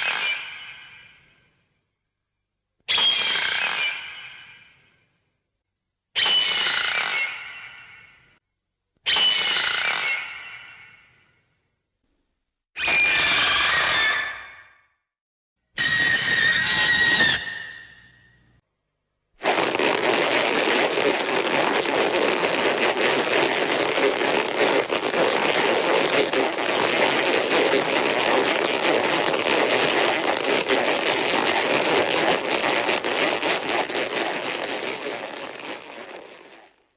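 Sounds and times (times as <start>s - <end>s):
rushing crackling noise: 19.4s - 36.9s.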